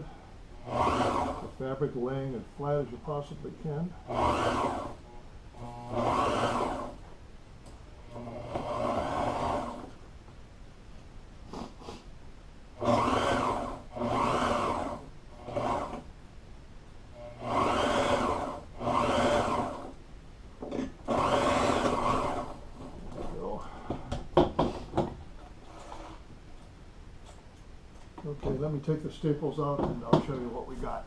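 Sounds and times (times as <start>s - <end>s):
sewing machine stitching: 0.6s - 1.6s, 4.0s - 5.0s, 5.6s - 7.0s, 8.1s - 10.0s, 12.8s - 16.1s, 17.2s - 20.0s, 21.0s - 22.6s.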